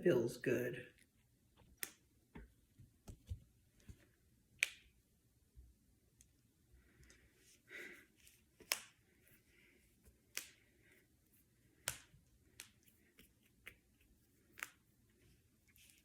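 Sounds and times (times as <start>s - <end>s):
knuckles cracking: 8.6s - 9.0s, 10.2s - 10.7s, 11.7s - 14.9s
soft rustle: 12.5s - 16.0s.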